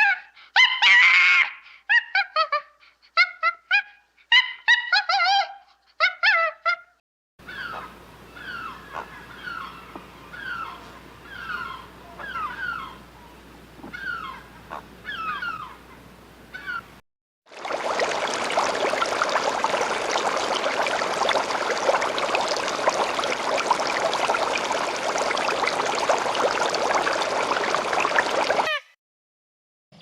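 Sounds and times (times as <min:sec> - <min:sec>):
loud pitched animal calls: 0:07.4 - 0:13.0
faint background hum: 0:07.4 - 0:17.0.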